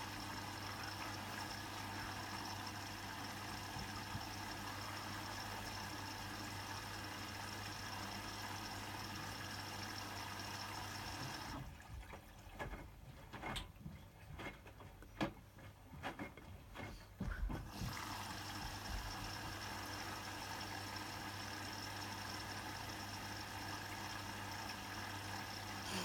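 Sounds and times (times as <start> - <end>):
washing machine motor humming: 0.0 - 11.8, 17.2 - 26.0
water and laundry sloshing: 11.5 - 14.8.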